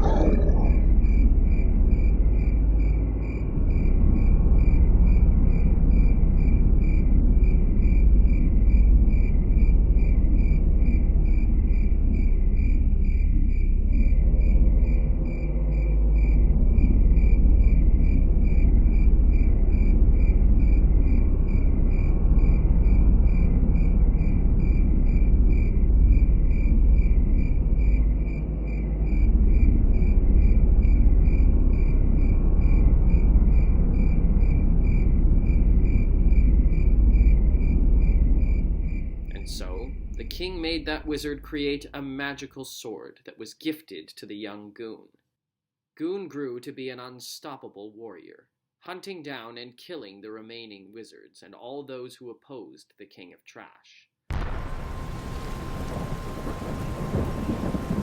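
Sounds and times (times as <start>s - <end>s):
crickets chirping: 0.0s - 41.8s, 54.4s - 58.0s
continuous low rumble: 0.0s - 42.9s, 54.3s - 58.0s.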